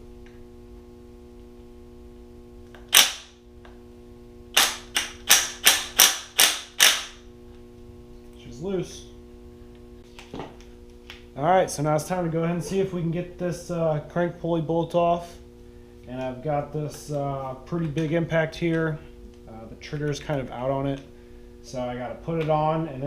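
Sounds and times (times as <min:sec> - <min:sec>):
impact wrench hammering: 0:02.8 - 0:03.4, 0:04.6 - 0:07.2.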